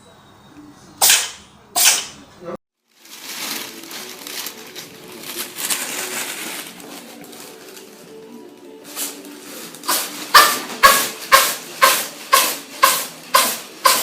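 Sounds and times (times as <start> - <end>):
faint voices: 0.0 - 14.0
cat sneezing: 1.0 - 2.2
rustling crinkling noise: 2.8 - 13.8.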